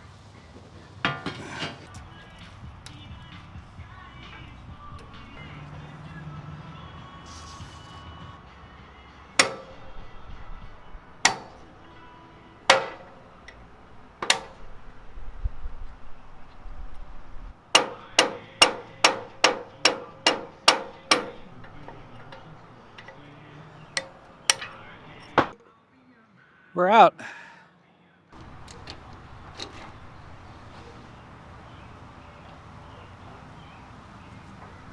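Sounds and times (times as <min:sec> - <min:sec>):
hammer striking steel pin: 0:09.4 - 0:10.1, 0:11.2 - 0:11.8, 0:12.7 - 0:13.3, 0:14.2 - 0:14.6, 0:17.8 - 0:25.5.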